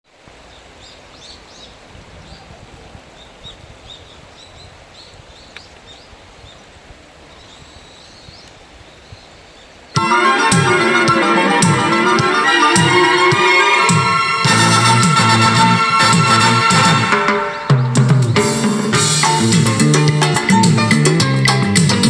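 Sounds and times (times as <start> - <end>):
outdoor background hiss: 0.0 - 22.0
small birds chirping: 0.4 - 10.0
loud music: 10.0 - 22.0.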